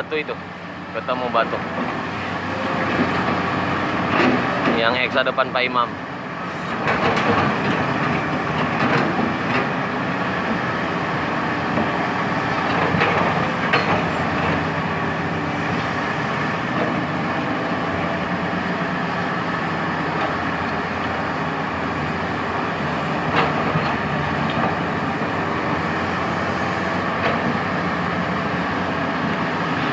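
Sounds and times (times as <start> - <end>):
excavator diesel engine running: 0.0 - 29.9.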